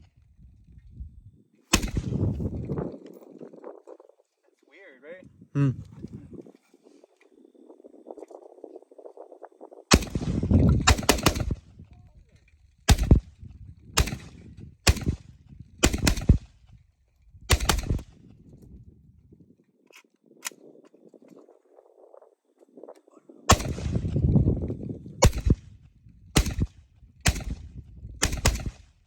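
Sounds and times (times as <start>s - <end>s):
gunshots: 1.7s - 2.4s, 9.9s - 11.6s, 12.9s - 13.2s, 14.0s - 15.2s, 15.8s - 16.4s, 17.5s - 18.1s, 23.5s - 24.1s, 25.2s - 25.6s, 26.4s - 27.6s, 28.2s - 28.9s.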